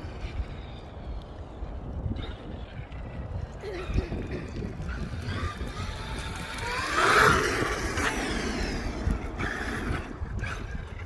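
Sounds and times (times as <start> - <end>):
electric motor whining past: 4.8 - 11.0.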